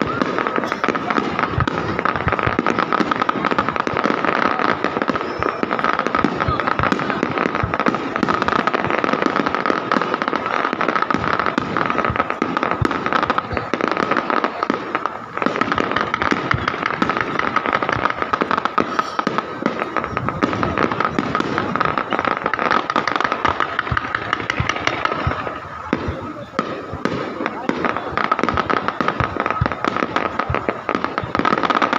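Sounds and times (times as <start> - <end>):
fireworks bangs and crackling: 0.0 - 31.9.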